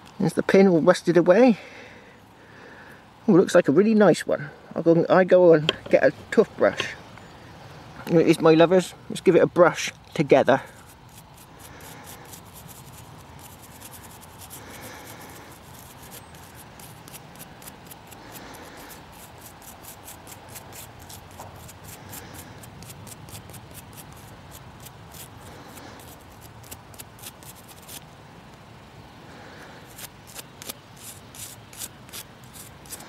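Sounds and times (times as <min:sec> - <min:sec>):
toothbrush scrubbing metal: 0:10.8 - 0:18.0, 0:29.9 - 0:33.0.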